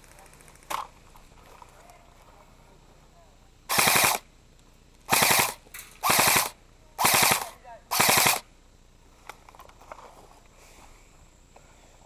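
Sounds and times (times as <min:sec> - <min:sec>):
airsoft gun full-auto bursts: 0:03.7 - 0:04.3, 0:05.1 - 0:08.5.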